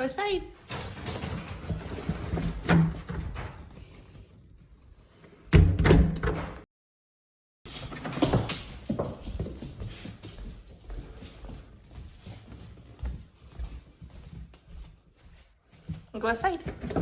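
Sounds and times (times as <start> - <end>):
house door opening and shutting: 0.5 - 6.7, 7.7 - 9.5.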